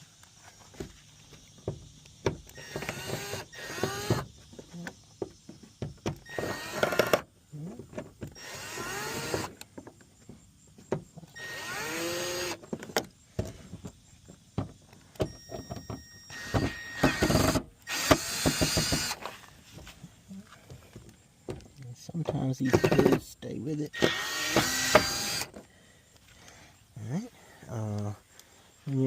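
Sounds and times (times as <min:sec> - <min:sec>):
cordless drill running: 0:02.5 - 0:04.2, 0:06.2 - 0:07.2, 0:08.4 - 0:09.5, 0:11.4 - 0:12.6, 0:16.3 - 0:19.2, 0:24.0 - 0:25.5.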